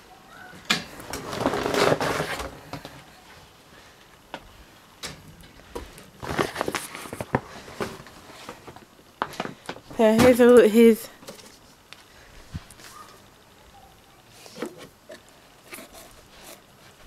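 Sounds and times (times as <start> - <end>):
books rustling: 0.7 - 3.0, 5.5 - 13.2.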